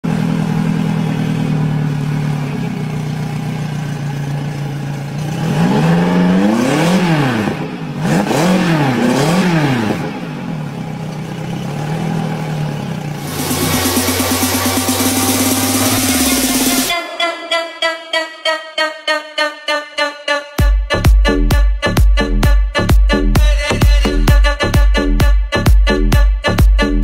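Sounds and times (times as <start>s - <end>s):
engine revving: 0.0s - 16.9s.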